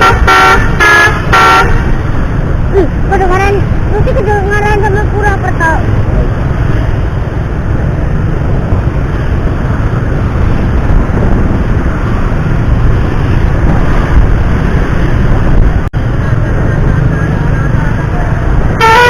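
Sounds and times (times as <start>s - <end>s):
vehicle road noise: 0.0s - 19.0s
wind buffeting microphone: 0.0s - 19.0s.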